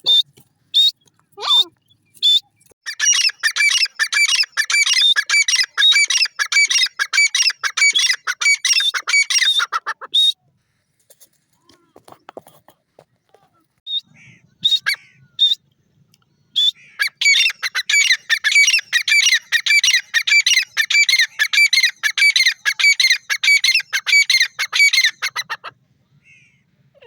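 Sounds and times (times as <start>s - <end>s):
bird calling harshly: 0.0s - 10.4s, 13.9s - 15.6s, 16.6s - 25.7s.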